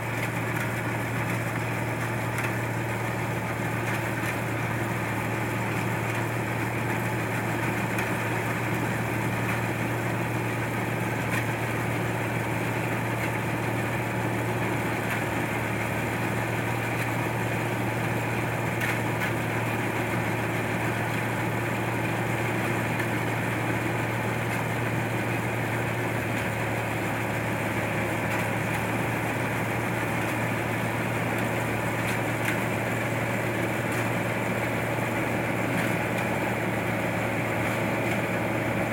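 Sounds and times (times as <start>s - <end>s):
combine harvester engine running: 0.0s - 38.9s.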